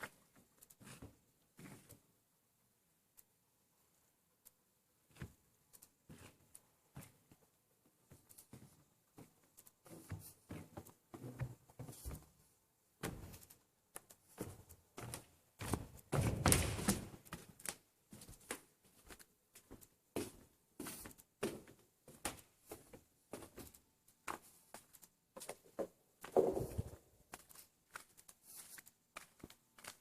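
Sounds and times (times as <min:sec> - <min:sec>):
objects knocking and thumping: 0:16.2 - 0:17.2, 0:25.8 - 0:27.0.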